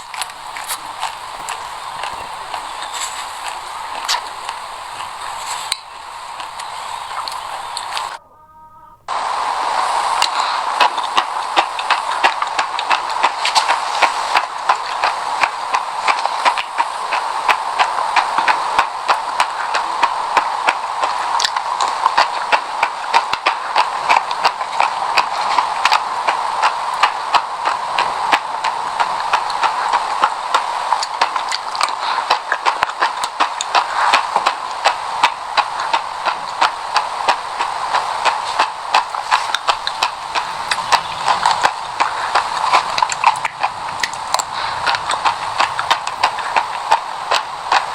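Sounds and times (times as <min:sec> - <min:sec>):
steady hiss: 0:00.0 - 0:47.9
seeds crunching while chewed: 0:00.1 - 0:08.1.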